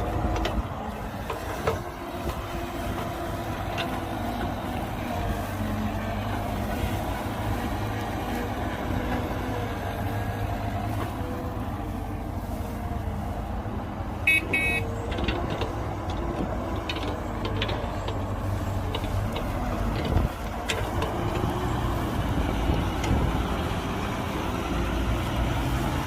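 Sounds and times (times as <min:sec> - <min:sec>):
heavy diesel machinery droning: 0:00.0 - 0:26.0
horn toot: 0:14.3 - 0:14.9.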